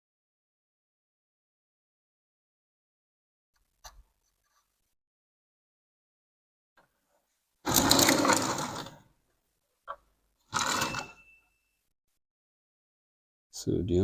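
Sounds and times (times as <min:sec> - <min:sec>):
faint thin high tone: 0:10.8 - 0:11.8.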